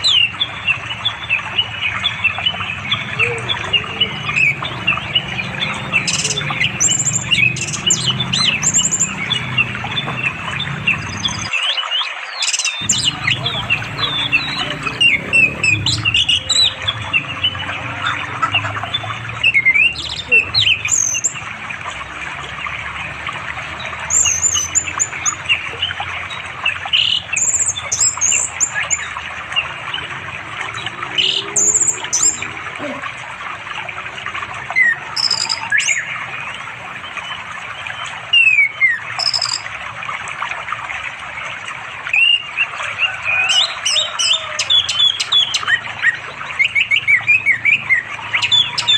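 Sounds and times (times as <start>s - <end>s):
thrush singing: 0.0s - 11.5s, 12.8s - 38.0s.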